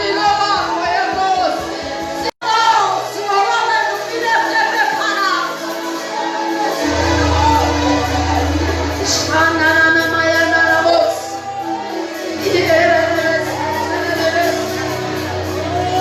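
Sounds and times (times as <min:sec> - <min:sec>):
low bass notes: 0:06.8 - 0:11.0
worship singing led by woman: 0:06.8 - 0:16.0.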